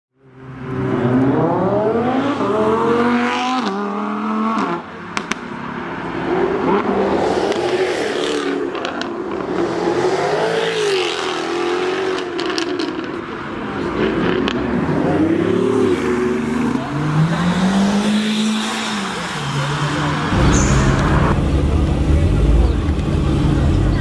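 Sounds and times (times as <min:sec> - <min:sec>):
car engine accelerating: 0:13.9 - 0:24.0.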